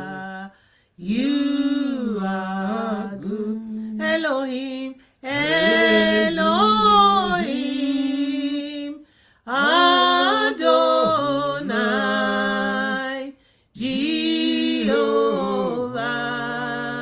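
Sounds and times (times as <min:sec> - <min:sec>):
person singing unaccompanied: 0:00.0 - 0:17.0.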